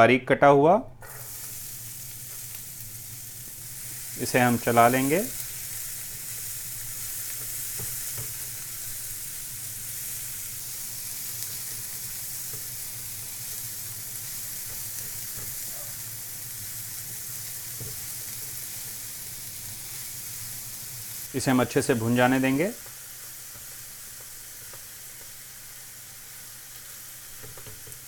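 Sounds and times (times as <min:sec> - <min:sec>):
onion sizzling in hot oil: 0:01.0 - 0:28.0.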